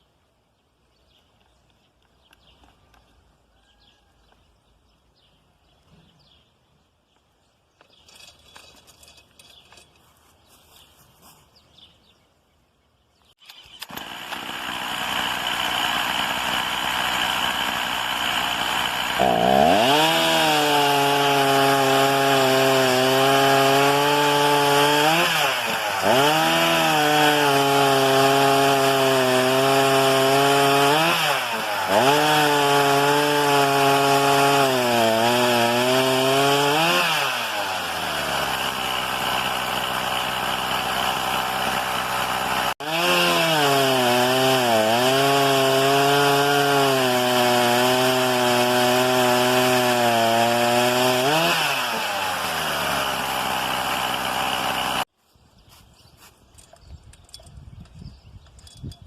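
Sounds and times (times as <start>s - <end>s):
chainsaw cutting wood: 13.4s - 55.1s.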